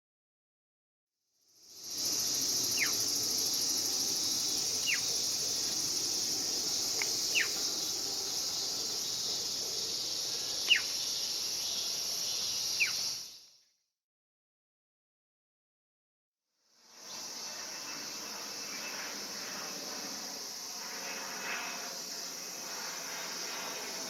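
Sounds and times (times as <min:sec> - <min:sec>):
insects chorus: 0:01.6 - 0:13.6, 0:16.8 - 0:24.0
descending whistled bird calls: 0:02.0 - 0:13.5.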